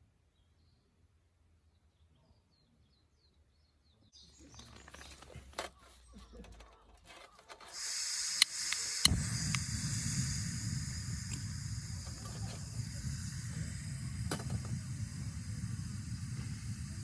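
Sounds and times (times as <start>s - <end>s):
faint bird chirps: 1.7s - 6.5s
light handling clicks: 4.9s - 14.8s
food sizzling over fire: 7.7s - 17.0s
wood fire crackling pops: 7.7s - 17.0s.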